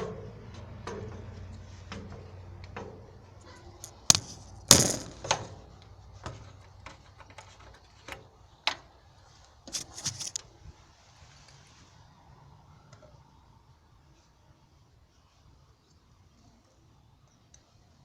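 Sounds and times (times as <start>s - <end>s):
hands handling objects: 3.8s - 5.5s, 9.7s - 10.4s.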